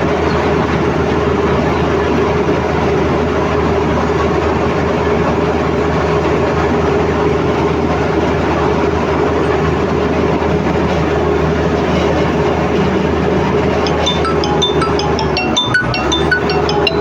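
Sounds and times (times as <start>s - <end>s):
bulldozer diesel engine: 0.0s - 17.0s.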